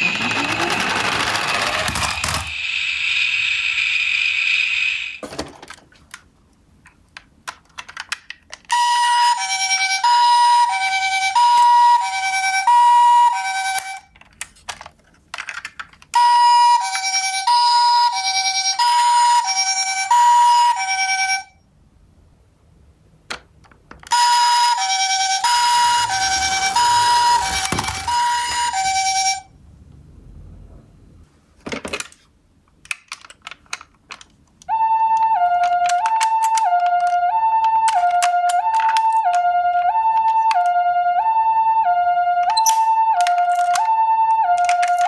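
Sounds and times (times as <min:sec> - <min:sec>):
toy hi-lo siren: 0:00.0 - 0:05.2, 0:08.7 - 0:14.0, 0:16.2 - 0:21.5, 0:24.1 - 0:29.5, 0:34.7 - 0:45.0.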